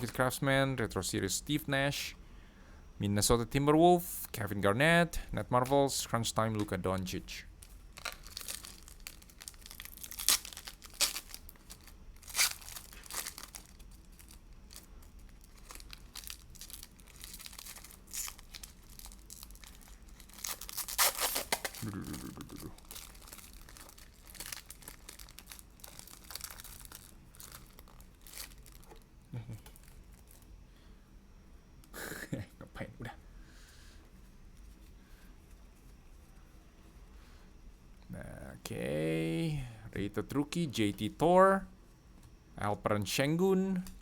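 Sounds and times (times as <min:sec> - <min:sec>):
foil wrappers ripping and crinkling: 0:07.6 - 0:30.4.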